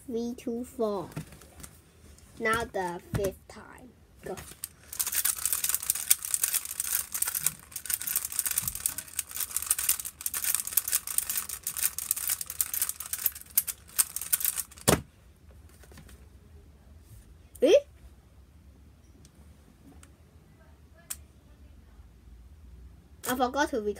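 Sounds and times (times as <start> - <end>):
puzzle cube plastic clicks: 4.3 - 15.0.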